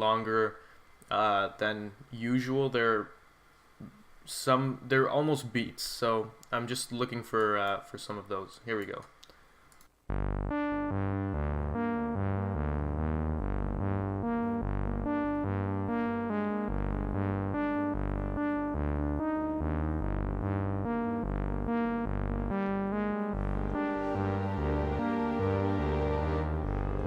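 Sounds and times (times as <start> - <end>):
synthesizer and keys loop with bass: 10.1 - 27.0.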